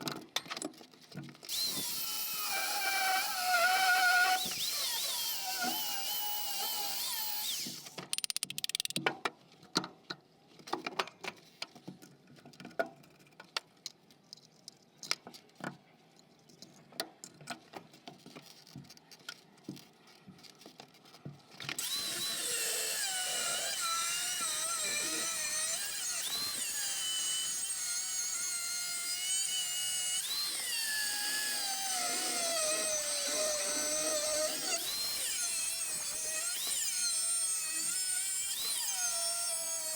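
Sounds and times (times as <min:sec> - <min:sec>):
electric grinder cutting metal: 0:21.8 - 0:39.9.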